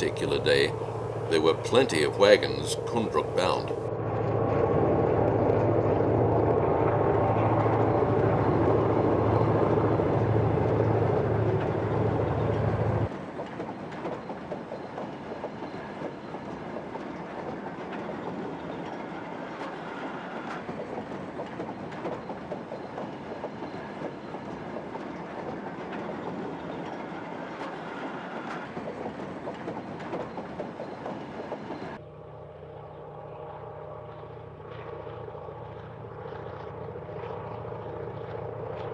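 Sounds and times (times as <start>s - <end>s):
locomotive engine humming: 0.0s - 3.9s.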